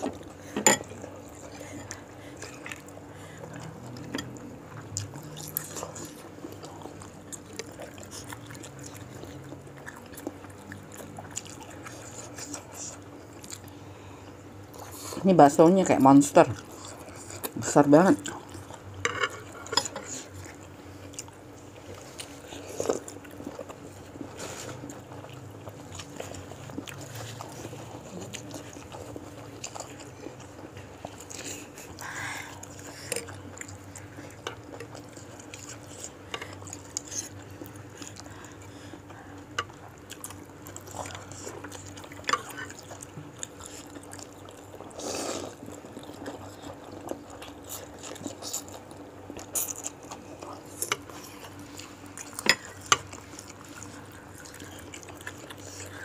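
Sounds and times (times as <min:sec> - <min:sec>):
chewing: 0:00.0 - 0:13.8, 0:16.5 - 0:17.6, 0:18.2 - 0:56.0
faint steady hum: 0:00.0 - 0:56.0.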